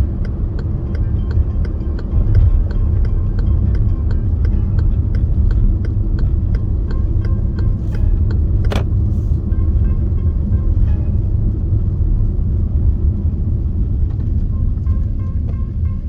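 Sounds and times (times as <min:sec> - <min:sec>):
plucked zither music on radio: 0:00.0 - 0:12.0
car cabin rumble: 0:00.0 - 0:16.0.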